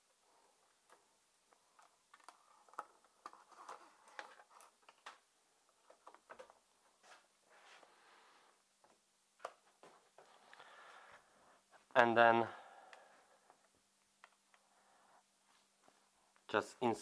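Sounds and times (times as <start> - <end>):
soft rustles: 6.8 - 8.9.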